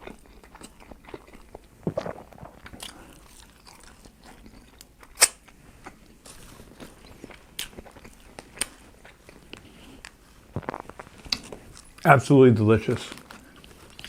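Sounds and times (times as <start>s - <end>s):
chewing and biting food: 0.0s - 6.0s, 6.7s - 12.0s, 13.1s - 14.0s
loud smack or crunch: 1.8s - 2.8s, 5.2s - 5.4s
wet mouth clicks: 1.8s - 3.0s.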